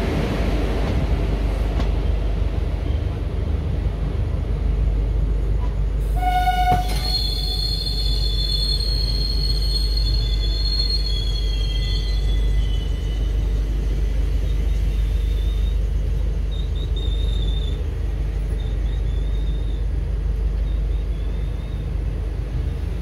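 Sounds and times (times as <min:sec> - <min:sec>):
train wheels rumbling on rails: 0:00.0 - 0:23.0
high wheel squeal: 0:06.2 - 0:13.4.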